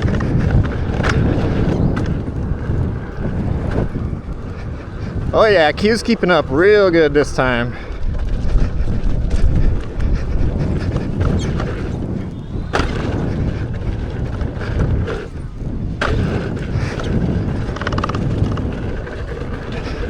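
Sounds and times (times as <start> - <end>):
low rumble and rattles: 0.0 - 20.0
wind buffeting microphone: 0.0 - 20.0.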